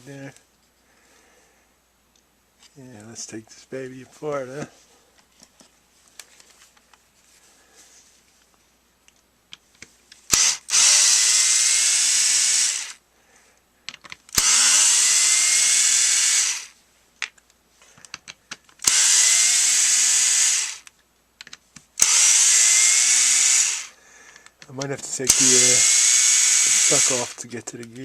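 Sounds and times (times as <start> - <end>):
electric screwdriver whining: 10.3 - 13.0, 14.3 - 16.8, 18.8 - 20.9, 22.0 - 23.9, 25.3 - 27.4.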